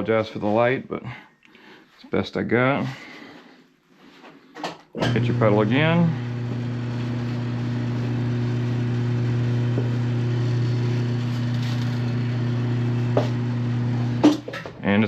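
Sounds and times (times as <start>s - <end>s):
turntable motor humming: 5.0s - 14.5s.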